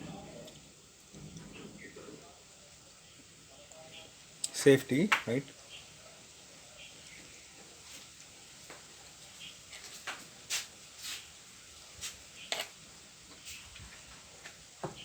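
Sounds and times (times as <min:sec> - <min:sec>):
curry sizzling in a pot: 0:00.0 - 0:15.0
crackles and pops: 0:06.8 - 0:11.3.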